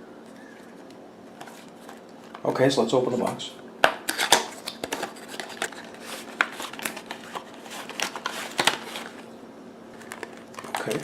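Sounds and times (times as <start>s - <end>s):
packaging rustling: 1.3s - 2.5s, 4.1s - 9.3s, 9.9s - 11.0s.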